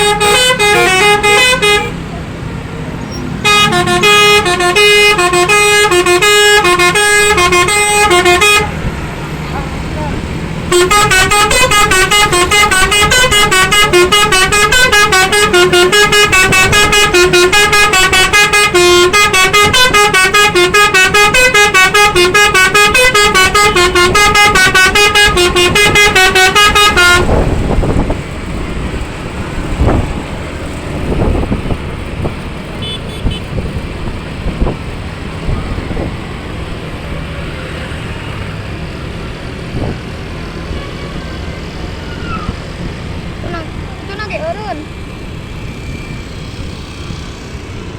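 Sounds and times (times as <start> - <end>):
multi-tone air horn melody: 0.0 - 2.0, 3.4 - 8.8, 10.7 - 28.1, 32.8 - 33.5, 40.6 - 42.0
road and engine noise: 0.0 - 47.9.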